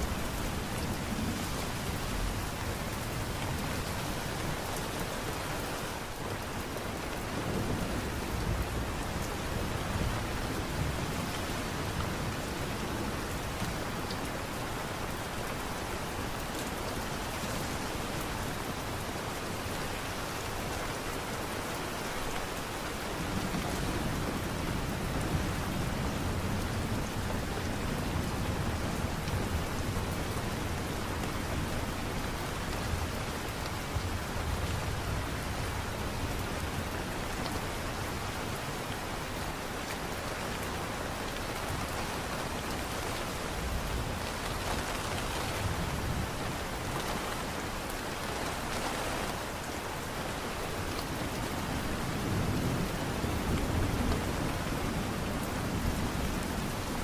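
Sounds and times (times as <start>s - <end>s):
light rain falling: 0.0s - 57.0s.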